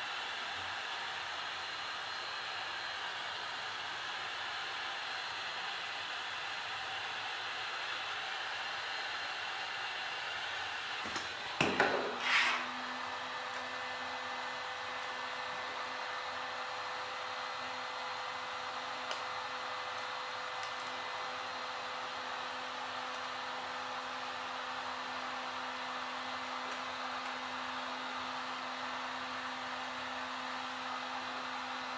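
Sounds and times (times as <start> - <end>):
heat gun blowing: 0.0 - 15.4.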